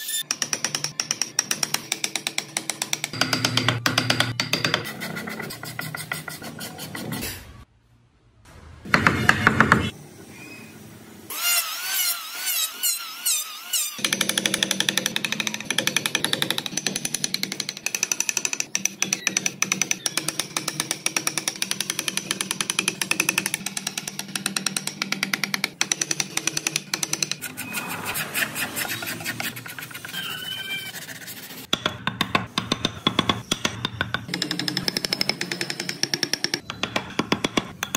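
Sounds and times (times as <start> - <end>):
tool tapping wood: 0.3 - 6.5, 14.0 - 27.4, 31.7 - 37.9.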